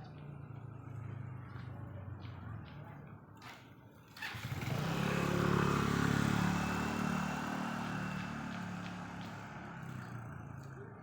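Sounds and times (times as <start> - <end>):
vehicle passing by: 4.2 - 11.0.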